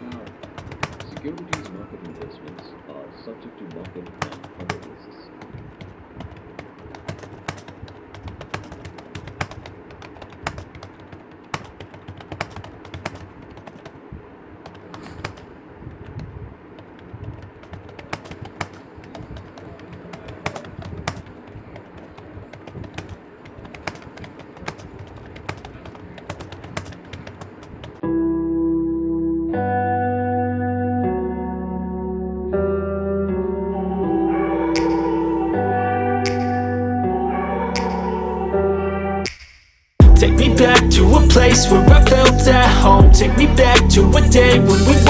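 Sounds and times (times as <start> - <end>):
computer keyboard typing: 0.0 - 28.0, 40.0 - 45.0.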